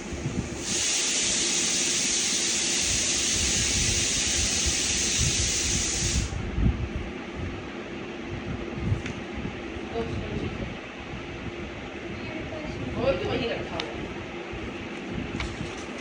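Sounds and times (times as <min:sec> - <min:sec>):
high hiss: 0:00.0 - 0:06.4.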